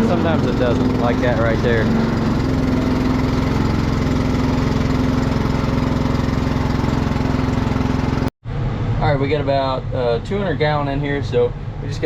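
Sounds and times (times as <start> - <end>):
pump pulsing mechanical hum: 0.0 - 9.0.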